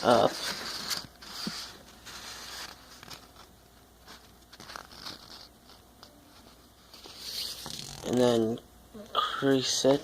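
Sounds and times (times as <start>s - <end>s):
paper rustling and crinkling: 0.0s - 7.8s
faint paper crackles: 0.0s - 8.1s.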